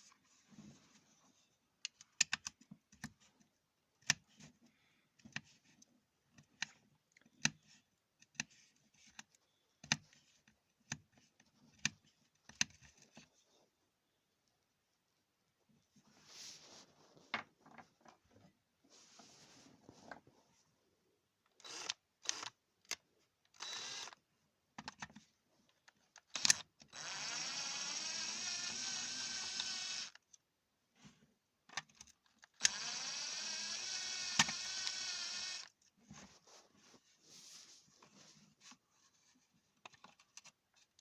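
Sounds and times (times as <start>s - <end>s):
small electric motor whirring: 21.6s - 22.5s, 23.6s - 24.2s, 26.4s - 30.2s, 32.6s - 35.7s
clicks taps and scraping: 37.6s - 41.0s.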